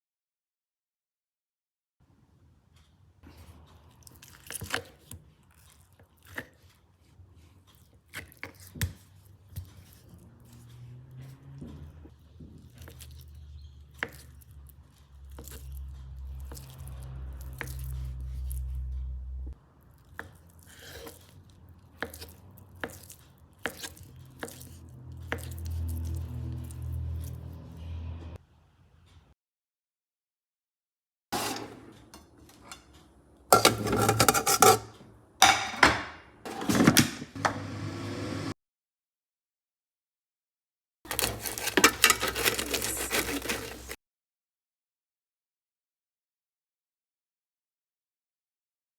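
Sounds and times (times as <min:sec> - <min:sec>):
kitchen utensils knocking and scraping: 0:31.4 - 0:37.6, 0:41.1 - 0:44.0.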